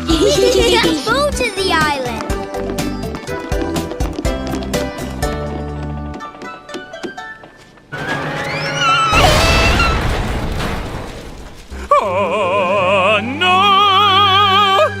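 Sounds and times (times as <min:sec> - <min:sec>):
cartoon explosion blast: 0:08.0 - 0:11.9.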